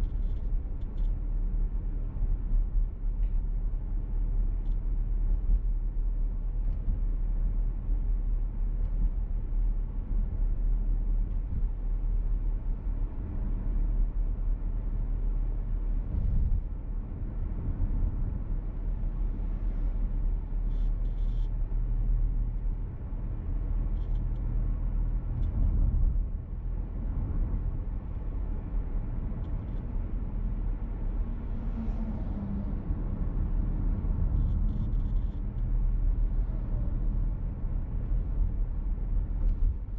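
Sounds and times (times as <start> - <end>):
car engine and tyres rumbling: 0.0 - 39.9.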